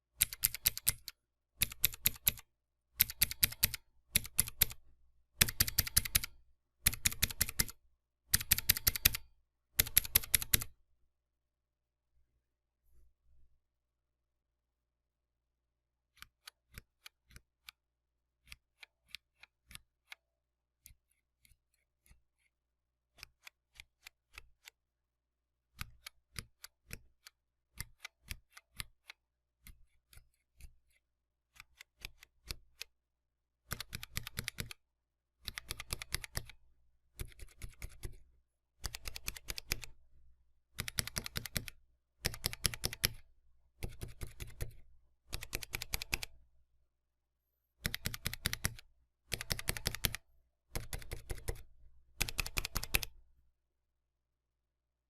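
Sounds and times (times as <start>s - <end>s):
mechanical keyboard typing: 0.2s - 4.8s, 5.4s - 9.2s, 9.8s - 10.7s, 33.7s - 34.8s, 35.4s - 36.5s, 38.8s - 40.0s, 40.8s - 43.2s, 43.8s - 46.3s, 47.8s - 53.1s.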